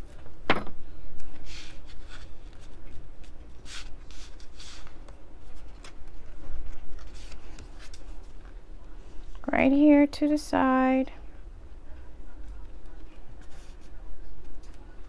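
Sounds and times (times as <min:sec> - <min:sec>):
paper rustling: 0:01.3 - 0:08.6, 0:12.4 - 0:15.0.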